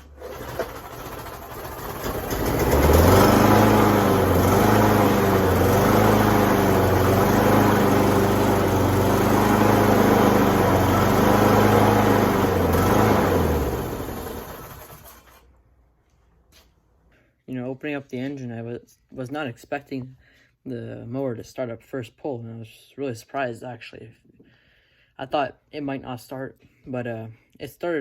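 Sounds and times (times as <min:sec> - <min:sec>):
lawn mower engine running: 0:00.0 - 0:15.5.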